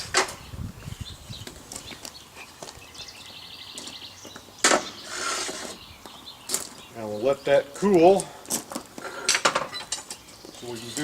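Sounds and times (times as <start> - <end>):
iron tools clinking and scraping: 7.9 - 11.0.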